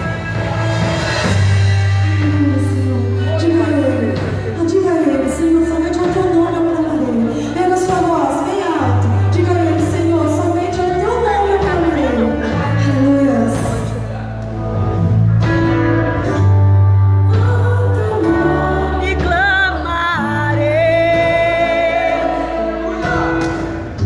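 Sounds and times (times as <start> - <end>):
held bass notes: 0.0 - 24.0
person singing: 17.2 - 23.5.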